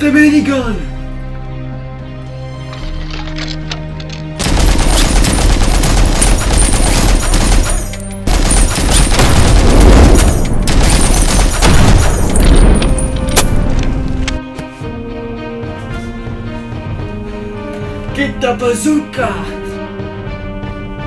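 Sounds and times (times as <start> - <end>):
background music: 0.0 - 21.0
machine-gun fire: 4.4 - 14.0.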